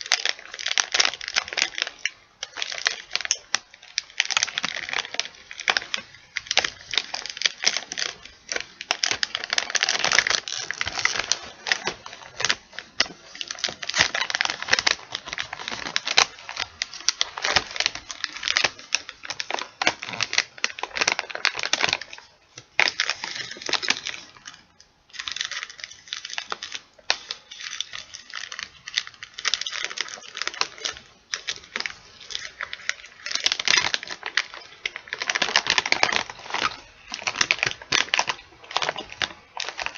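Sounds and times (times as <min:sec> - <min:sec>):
chip bag crinkling: 0:00.0 - 0:39.9.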